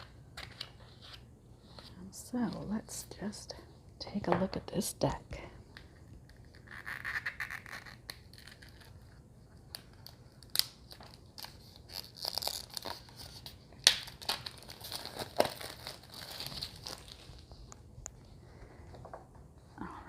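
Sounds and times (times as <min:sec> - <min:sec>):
packaging crinkling and tearing: 0:06.3 - 0:17.8.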